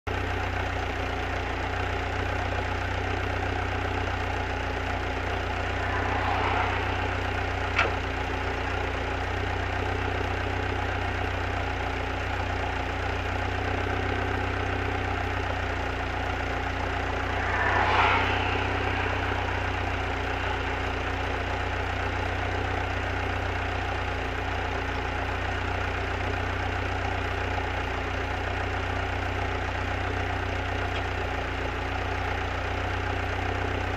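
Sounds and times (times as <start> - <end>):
car engine idling: 0.1 - 33.9
engine revving: 4.0 - 10.0, 14.9 - 24.1.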